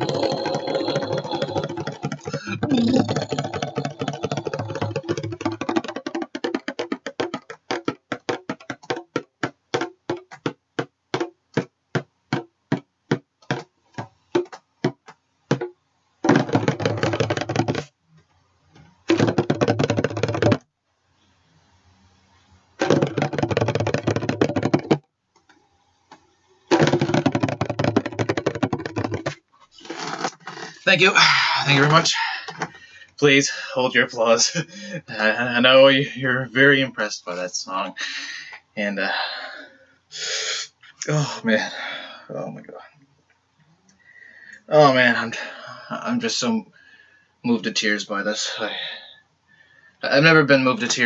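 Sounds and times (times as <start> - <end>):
bongo drum tapped by hand: 0.0 - 17.9, 19.1 - 20.6, 22.8 - 25.1, 26.7 - 29.4, 30.0 - 32.7.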